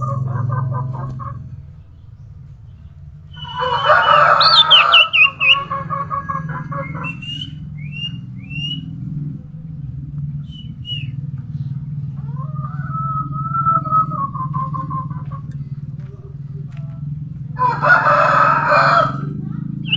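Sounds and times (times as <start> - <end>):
steady low hum: 0.0 - 19.9
bird chirps and calls: 3.3 - 8.9, 10.4 - 11.1
drawn-out bird whistle: 3.3 - 9.0, 10.4 - 11.3, 12.3 - 15.5.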